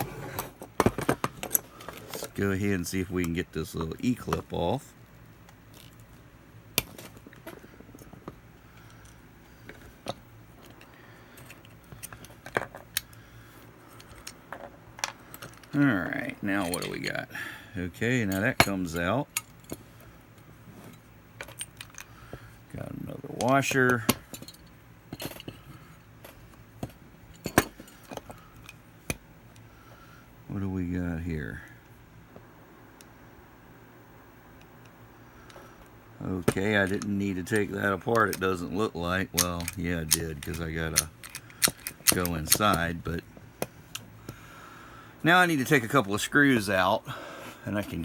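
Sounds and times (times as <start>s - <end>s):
small metal parts clinking: 13.9s - 17.3s, 18.2s - 19.8s, 20.8s - 22.2s, 23.2s - 29.2s, 36.4s - 43.2s
hand tools clicking and tapping: 39.3s - 43.0s.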